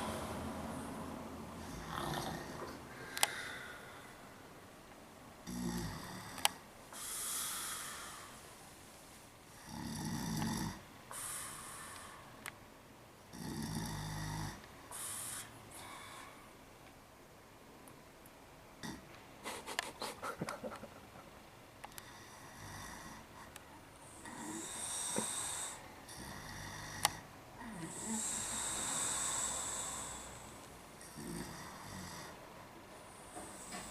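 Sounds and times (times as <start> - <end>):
man snoring: 1.6 - 2.6, 5.4 - 8.4, 9.5 - 10.8, 13.3 - 15.5, 22.0 - 23.3, 24.2 - 32.4
hissing breath: 14.9 - 16.4.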